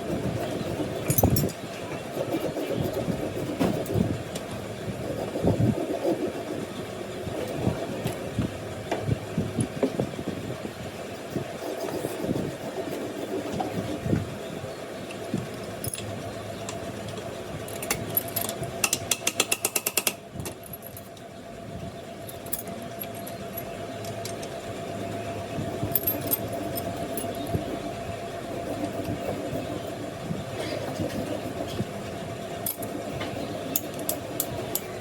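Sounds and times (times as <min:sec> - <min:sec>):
mechanical hum: 0:00.0 - 0:35.0
metallic clinks: 0:25.9 - 0:27.6.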